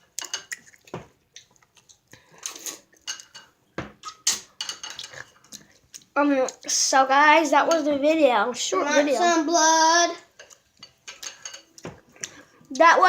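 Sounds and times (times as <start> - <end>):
bowl and utensils clinking: 3.0 - 5.6, 10.3 - 12.4.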